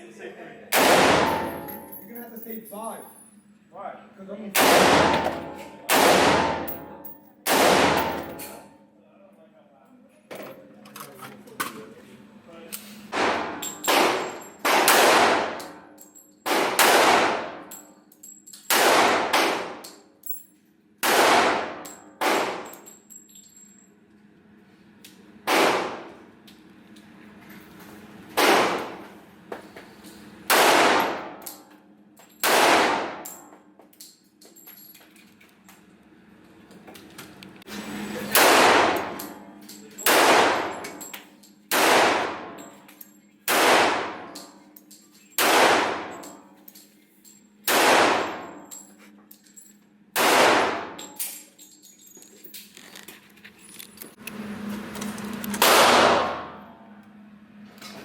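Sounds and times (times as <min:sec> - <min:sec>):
gunshots with ringing echo: 0:00.7 - 0:01.9, 0:04.6 - 0:08.6, 0:13.1 - 0:15.6, 0:16.5 - 0:17.6, 0:21.0 - 0:22.7, 0:30.5 - 0:31.3, 0:32.4 - 0:33.3, 0:40.1 - 0:40.8, 0:45.4 - 0:46.2, 0:50.2 - 0:51.0.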